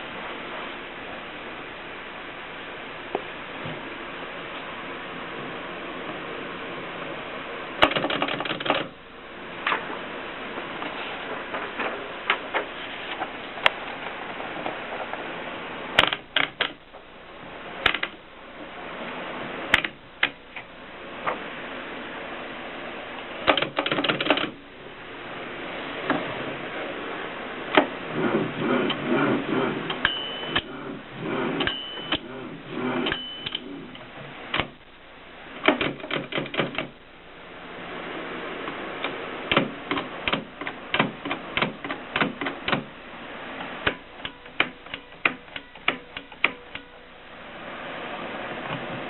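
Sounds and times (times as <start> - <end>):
typewriter clacking: 7.8 - 8.9, 16.0 - 16.8, 17.8 - 18.2, 23.4 - 24.6, 35.6 - 37.0, 39.5 - 42.9, 43.8 - 46.9
typewriter bell ring: 30.0 - 30.6, 31.6 - 32.2, 33.1 - 33.7.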